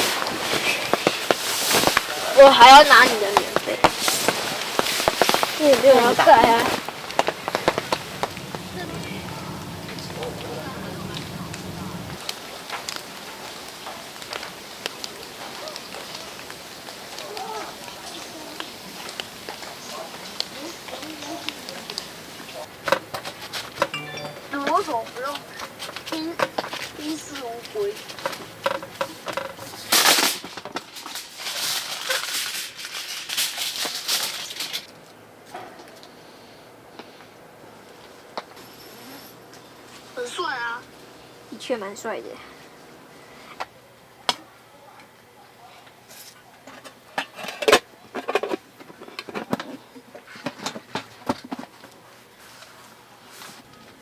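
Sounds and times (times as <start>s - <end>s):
rustling and light clattering: 0.0s - 23.9s, 24.8s - 36.2s, 45.8s - 54.0s.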